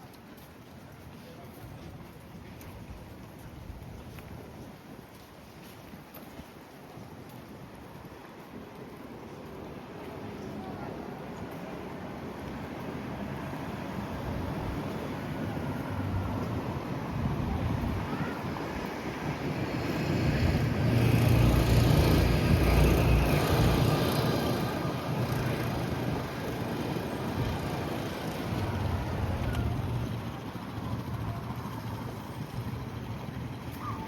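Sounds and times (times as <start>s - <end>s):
wind gusting on microphone: 12.6s - 33.6s.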